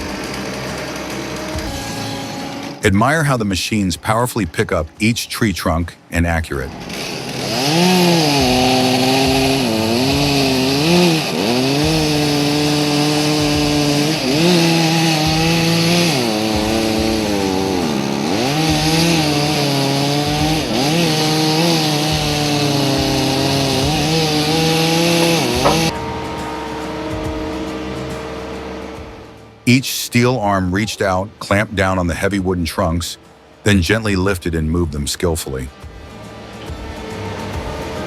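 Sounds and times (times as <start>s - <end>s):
chainsaw cutting wood: 0.0s - 2.9s, 6.7s - 29.1s.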